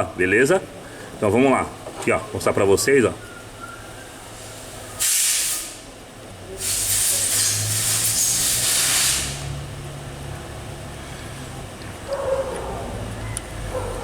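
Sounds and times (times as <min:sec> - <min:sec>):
pressurised hissing: 0:04.4 - 0:05.9, 0:06.5 - 0:09.6.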